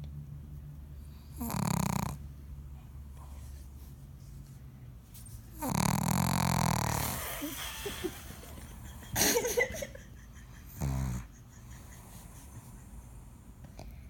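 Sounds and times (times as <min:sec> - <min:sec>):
dog snoring and snorting: 0:01.1 - 0:02.3, 0:05.5 - 0:07.8, 0:10.6 - 0:12.3.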